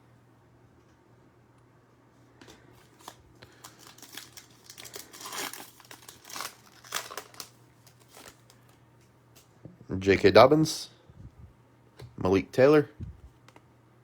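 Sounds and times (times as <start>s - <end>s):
card pack wrapper tearing and crinkling: 2.8s - 8.8s.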